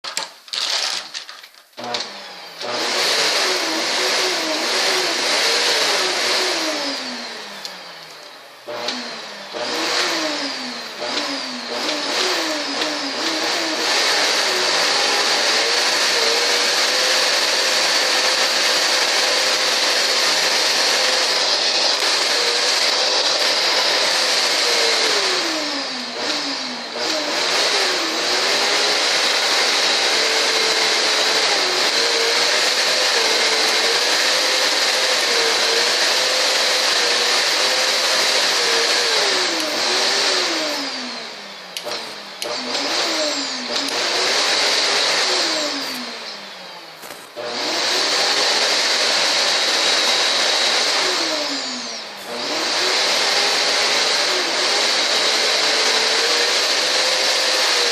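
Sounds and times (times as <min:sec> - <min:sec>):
vacuum cleaner motor whining: 0:00.1 - 0:57.9.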